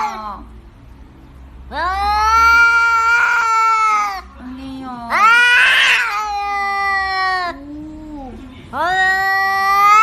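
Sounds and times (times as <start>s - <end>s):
cat-like yowls: 1.7s - 4.3s, 5.1s - 7.6s, 8.9s - 10.0s.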